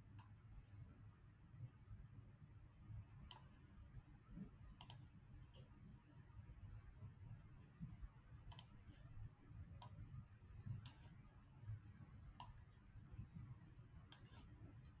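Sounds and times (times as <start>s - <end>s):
faint low room hum: 0.0s - 15.0s
computer mouse clicks: 3.3s - 3.5s, 4.8s - 5.1s, 8.5s - 8.8s, 10.8s - 11.2s, 12.4s - 12.6s, 14.1s - 14.6s.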